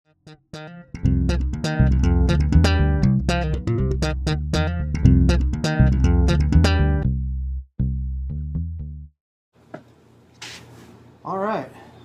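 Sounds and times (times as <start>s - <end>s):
electric bass plucked notes: 0.1s - 9.2s.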